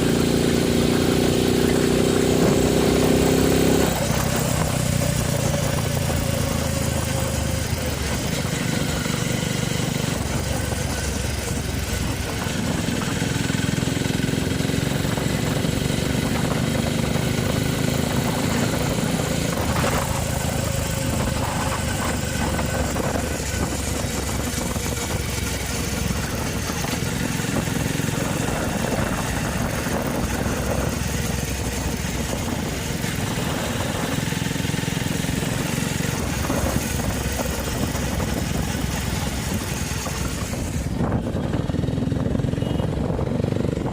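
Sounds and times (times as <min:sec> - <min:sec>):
motorcycle engine idling: 0:04.0 - 0:43.9.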